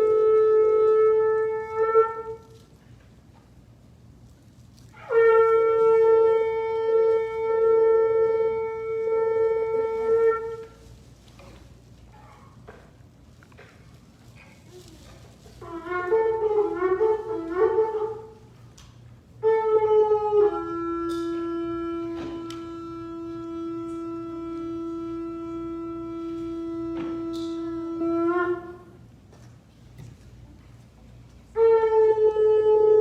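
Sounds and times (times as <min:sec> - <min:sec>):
shofar blasts: 0:00.0 - 0:02.8, 0:04.0 - 0:12.9, 0:15.5 - 0:18.6, 0:19.2 - 0:29.2, 0:31.4 - 0:33.0.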